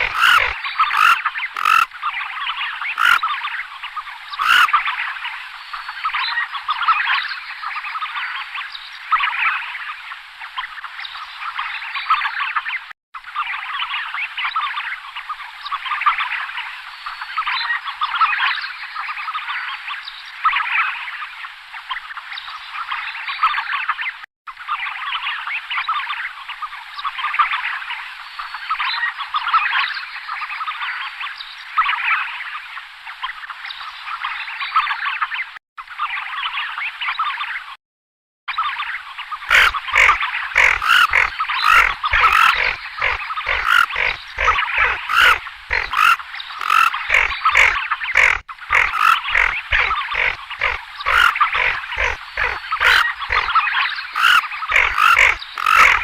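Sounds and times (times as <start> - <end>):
ducks calling: 0.0 - 1.9, 3.0 - 3.2, 4.4 - 4.8, 39.5 - 56.0.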